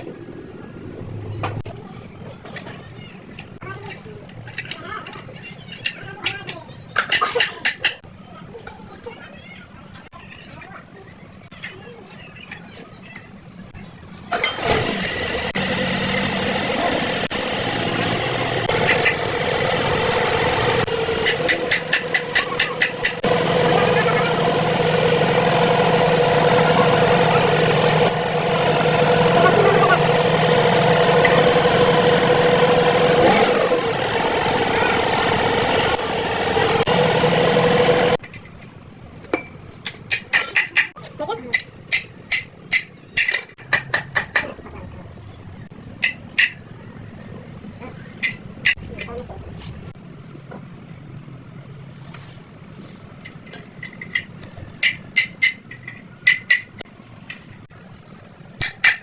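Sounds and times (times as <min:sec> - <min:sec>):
engine humming: 0:14.3 - 0:38.4.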